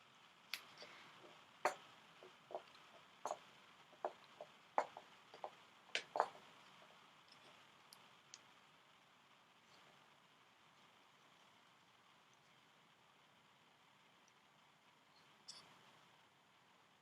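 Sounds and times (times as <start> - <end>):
light clicks and knocks: 4.0 - 7.6.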